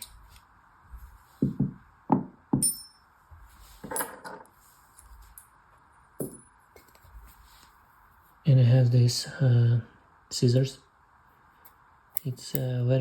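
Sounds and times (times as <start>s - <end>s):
high metallic ring: 2.6s - 3.2s.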